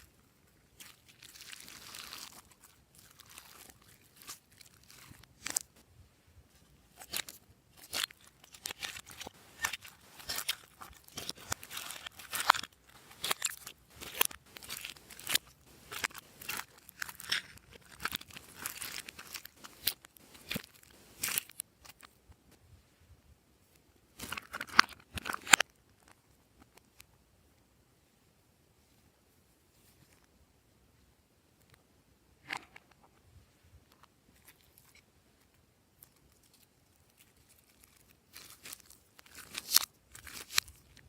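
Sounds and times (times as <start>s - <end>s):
slime crackling and popping: 0.8s - 5.7s, 7.0s - 22.0s, 37.2s - 41.0s.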